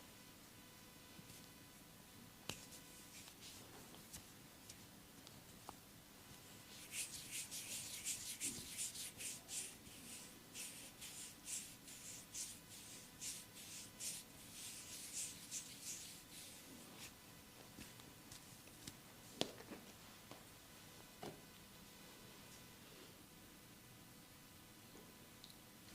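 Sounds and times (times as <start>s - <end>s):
hands rubbing in massage: 2.5s - 4.3s, 6.7s - 17.2s.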